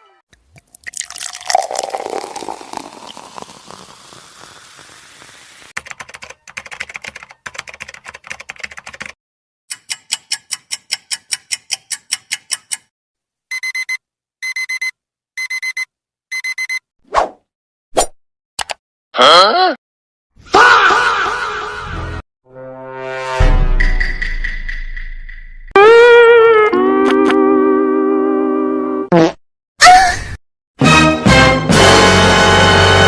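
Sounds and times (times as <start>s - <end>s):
digital alarm clock beeping: 13.5s - 16.8s.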